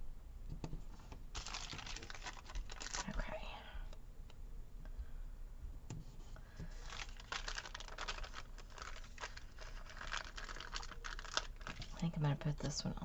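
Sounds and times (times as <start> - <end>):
paper rustling and crinkling: 1.3 - 3.3, 6.6 - 12.1.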